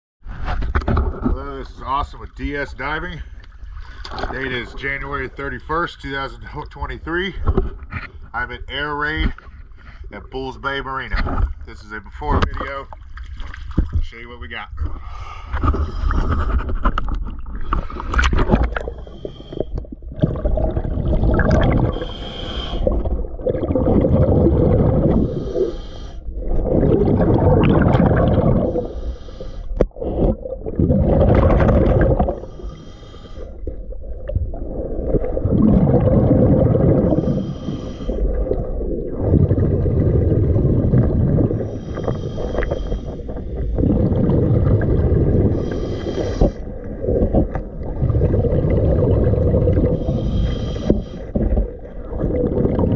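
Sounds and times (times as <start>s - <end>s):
exhaled bubbles rushing: 15.6s - 52.9s
regulator inhale hiss: 18.9s - 19.8s, 21.9s - 22.9s, 25.2s - 26.3s, 28.7s - 29.8s, 32.4s - 33.7s, 37.1s - 38.2s, 41.6s - 43.4s, 45.5s - 46.7s, 50.0s - 51.4s.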